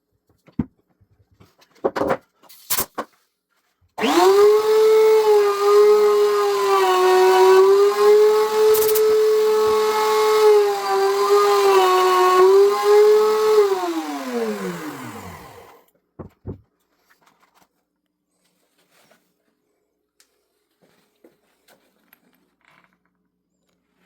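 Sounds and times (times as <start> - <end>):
wood router whining: 4.0 - 15.8.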